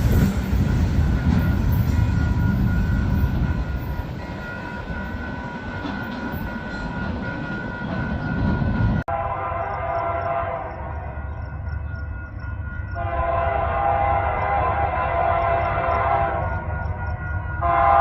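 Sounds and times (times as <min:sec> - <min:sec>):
freight train cars rumbling: 0:00.0 - 0:18.0
locomotive air horn: 0:09.1 - 0:11.2, 0:13.0 - 0:16.7, 0:17.6 - 0:18.0.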